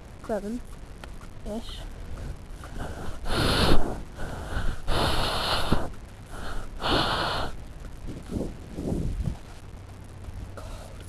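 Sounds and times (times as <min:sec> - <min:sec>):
person breathing heavily: 0:02.1 - 0:09.3, 0:10.6 - 0:11.0.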